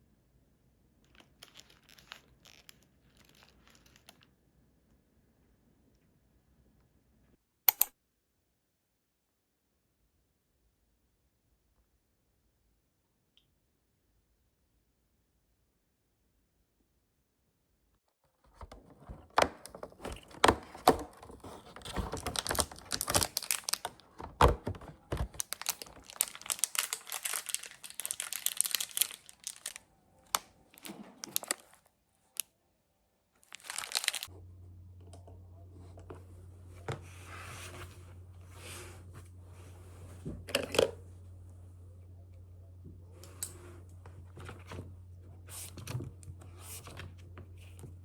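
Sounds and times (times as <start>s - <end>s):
wrapping rustling and tearing: 18.7s - 31.9s, 33.4s - 34.3s
steady low hum: 34.3s - 48.0s.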